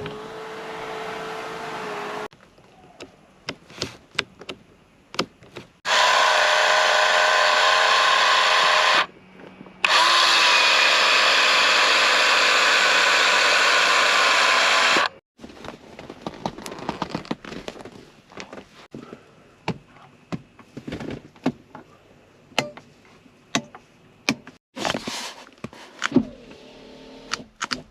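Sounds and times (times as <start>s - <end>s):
small electric motor whining: 5.9s - 9.1s, 9.8s - 15.2s.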